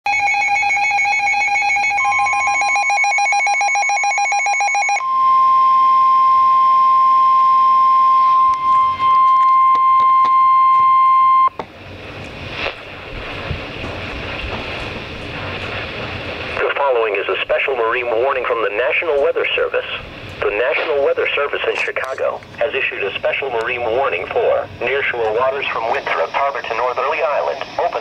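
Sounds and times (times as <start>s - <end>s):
electronic alarm tone: 0.1s - 11.6s
radio hiss: 12.3s - 28.0s.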